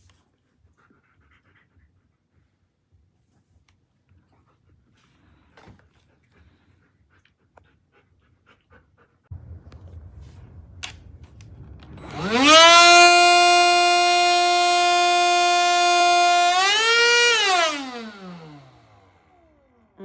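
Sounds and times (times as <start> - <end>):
low hum: 9.3 - 20.0
handheld vacuum motor whining: 12.0 - 19.9.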